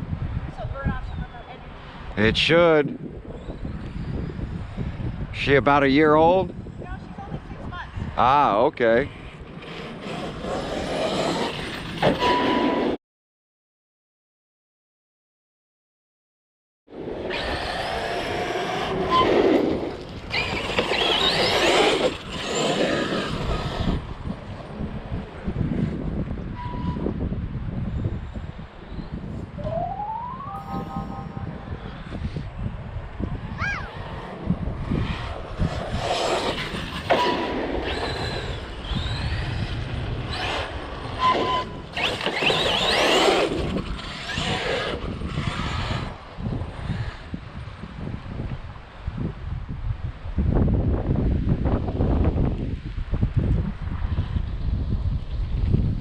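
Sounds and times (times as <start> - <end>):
tyre and ground noise: 9.1 - 13.0, 16.9 - 26.0, 31.8 - 47.9
electric rc car motor whine: 9.2 - 12.8, 17.2 - 24.2, 33.9 - 47.4.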